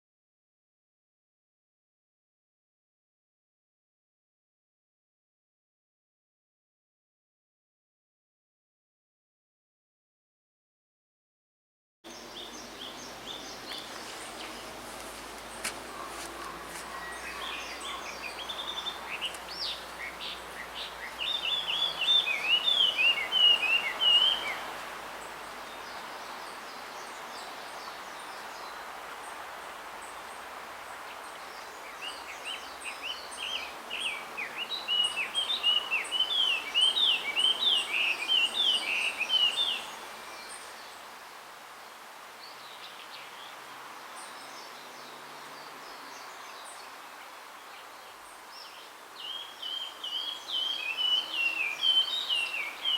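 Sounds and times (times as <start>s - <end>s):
bird warbling song: 12.1s - 14.8s, 15.5s - 28.8s, 31.1s - 41.0s, 44.1s - 52.9s.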